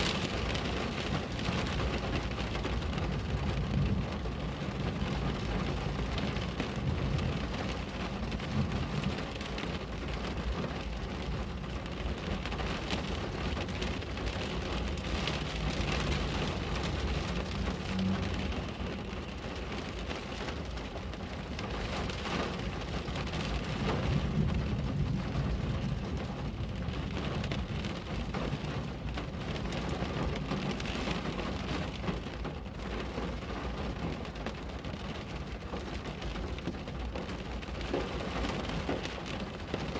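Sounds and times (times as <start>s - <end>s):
rain pattering on a window: 0.0s - 39.9s
low rumble: 13.2s - 21.7s.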